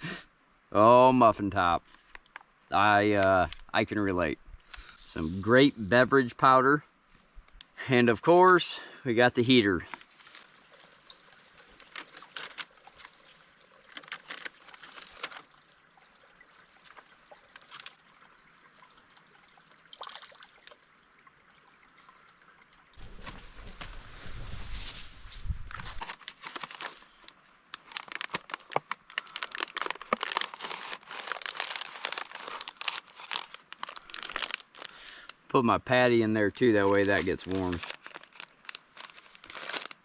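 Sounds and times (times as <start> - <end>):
plastic pouches crinkling: 9.8 - 18.4, 25.7 - 35.4, 36.6 - 40.0.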